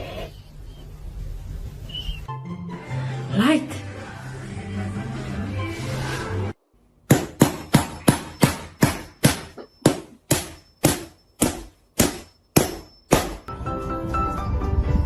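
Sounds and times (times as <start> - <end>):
sharp ringing knocks: 7.1 - 13.5.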